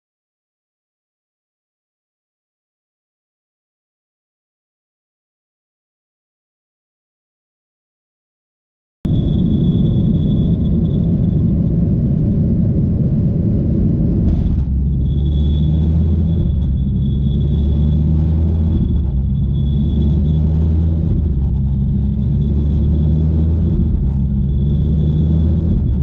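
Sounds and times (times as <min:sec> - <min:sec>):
jet engine rumble and whine: 0:09.1 - 0:26.0
low droning hum: 0:09.1 - 0:26.0.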